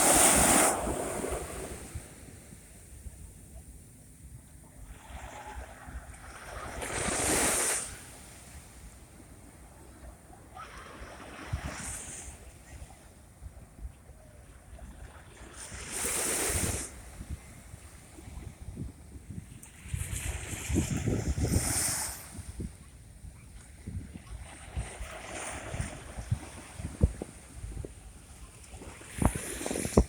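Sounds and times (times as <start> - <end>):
sea waves breaking on shore: 0.0 - 3.0, 4.8 - 13.2, 14.2 - 30.0
wind rumbling on microphone: 0.0 - 30.0.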